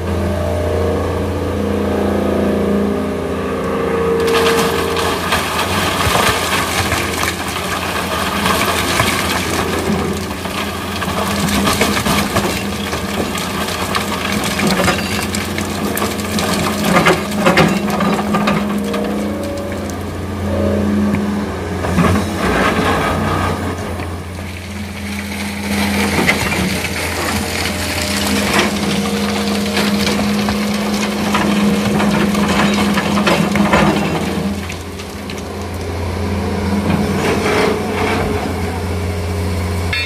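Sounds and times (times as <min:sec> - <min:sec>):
excavator diesel engine: 0:00.0 - 0:40.0
loud clatters: 0:04.2 - 0:18.9
sand and stones scraping: 0:21.9 - 0:35.2.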